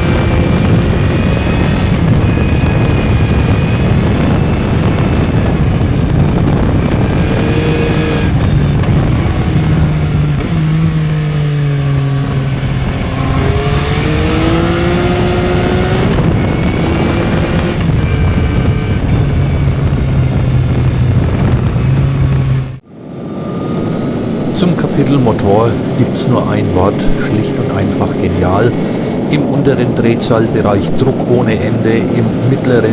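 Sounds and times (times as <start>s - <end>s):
motorcycle engine running: 0.0s - 22.8s
wind rush: 0.0s - 32.5s.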